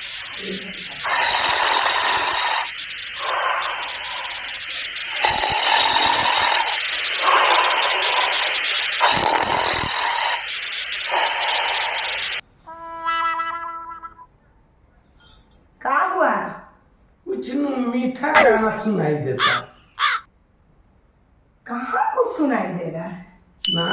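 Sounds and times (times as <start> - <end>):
breathing out: 0.0 - 12.4
person snoring: 0.0 - 12.4.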